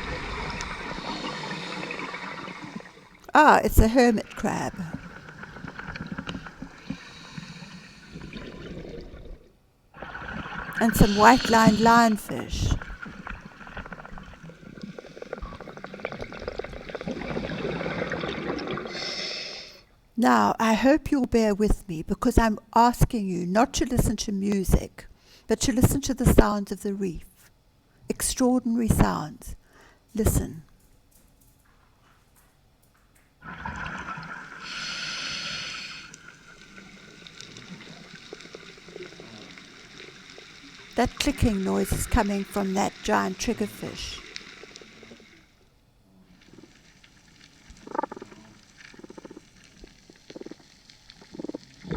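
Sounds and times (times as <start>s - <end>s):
hissing regulator inhale: 0.0s - 2.9s, 6.8s - 8.6s, 10.9s - 11.9s, 18.8s - 19.9s, 34.5s - 38.0s
diver exhaling bubbles: 0.0s - 3.2s, 4.8s - 19.8s, 33.4s - 40.1s
crackle of reef clicks: 0.0s - 3.3s, 4.9s - 7.6s, 12.8s - 18.9s, 30.7s - 34.9s, 36.0s - 42.4s, 44.2s - 45.4s, 46.3s - 51.9s
underwater water noise: 0.0s - 20.0s, 33.2s - 51.9s.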